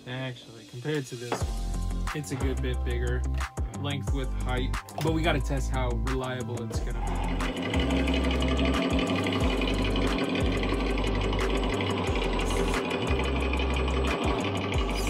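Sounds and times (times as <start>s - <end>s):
simulated diesel engine clatter: 6.8s - 15.0s.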